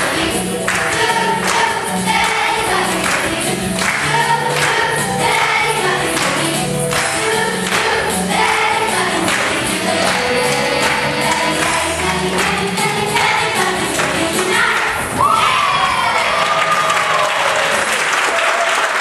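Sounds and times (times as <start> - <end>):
musical accompaniment with steady beat: 0.0 - 15.0
children's choir singing: 0.0 - 16.4.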